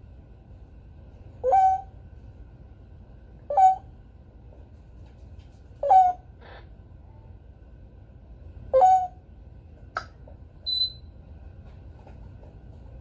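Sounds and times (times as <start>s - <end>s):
parrot high whistle: 1.4s - 1.9s, 3.5s - 3.9s, 8.7s - 9.2s, 10.6s - 11.1s
parrot call: 1.4s - 2.0s, 3.5s - 3.9s, 5.8s - 6.7s, 8.7s - 9.2s.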